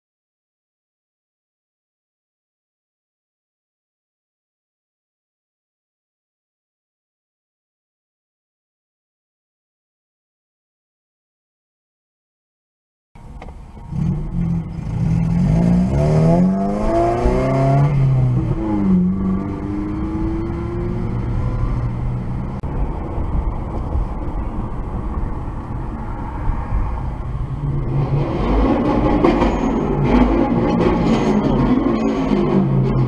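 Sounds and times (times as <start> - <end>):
car engine accelerating: 13.2 - 33.0.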